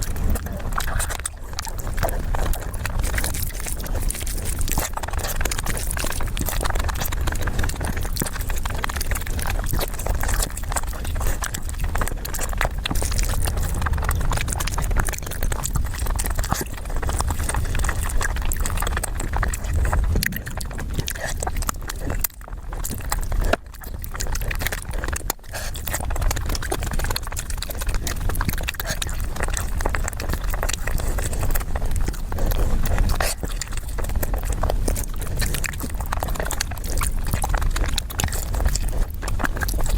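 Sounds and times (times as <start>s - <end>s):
person chewing and crunching food: 0.0s - 39.9s.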